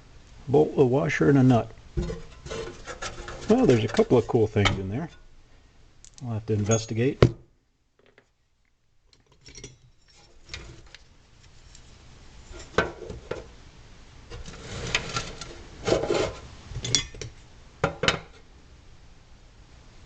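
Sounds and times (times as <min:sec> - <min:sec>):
hardware rubbing and scraping: 0:01.4 - 0:05.2, 0:14.3 - 0:16.5.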